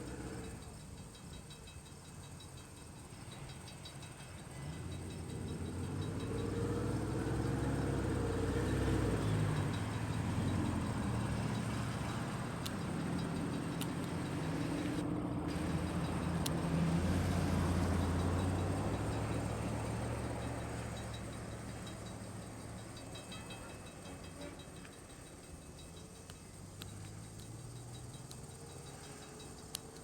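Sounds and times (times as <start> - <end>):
engine humming: 0.0 - 30.0
sharp clicks: 8.8 - 16.8, 25.8 - 30.0.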